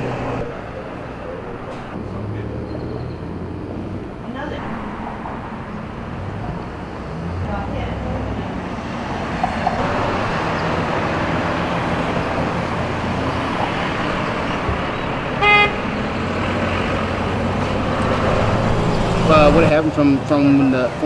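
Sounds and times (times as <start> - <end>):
outdoor traffic noise: 0.0 - 21.0
car horn toot: 15.4 - 15.8.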